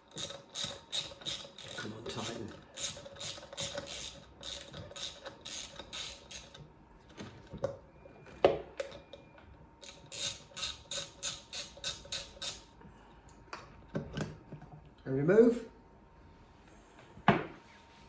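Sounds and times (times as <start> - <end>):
socket ratchet clicking: 0.0 - 6.6, 9.8 - 12.8.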